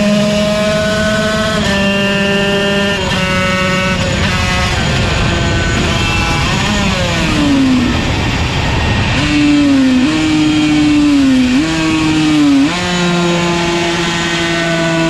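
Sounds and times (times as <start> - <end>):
two-stroke racing engine running: 0.0 - 15.0.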